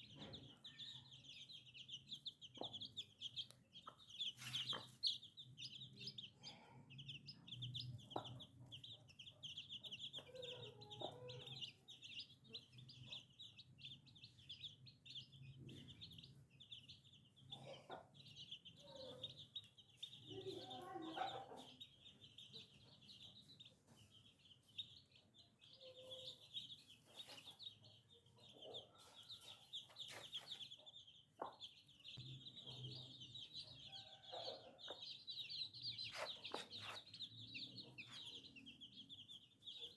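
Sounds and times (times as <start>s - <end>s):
baby chicks peeping: 0.0s - 39.9s
hen clucking: 35.9s - 38.5s.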